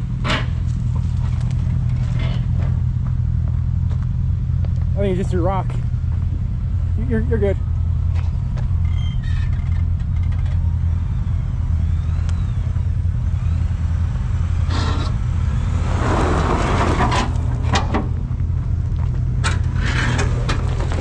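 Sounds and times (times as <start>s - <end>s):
off-road vehicle engine droning: 0.0s - 21.0s
skid plate scraping over rock: 14.7s - 21.0s.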